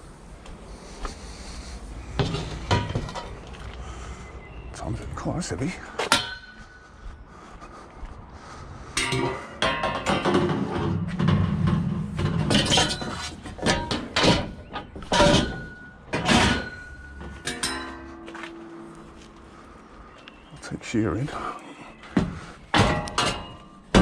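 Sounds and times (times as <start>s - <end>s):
scrap metal clanking and banging: 2.1s - 3.7s, 6.0s - 7.0s, 8.9s - 19.7s, 21.4s - 24.0s.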